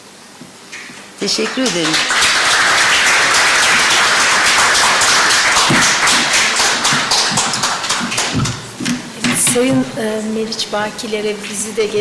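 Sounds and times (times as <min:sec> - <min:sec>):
audience applauding: 0:01.2 - 0:09.6.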